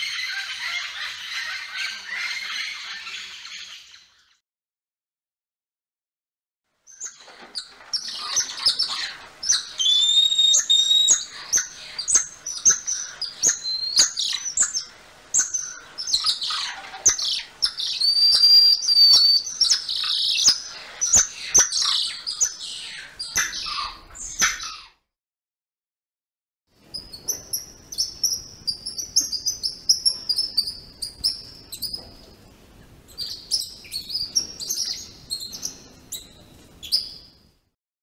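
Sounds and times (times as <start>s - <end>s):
bird chirping and whistling: 8.0s - 14.8s, 15.4s - 24.8s, 33.2s - 36.2s.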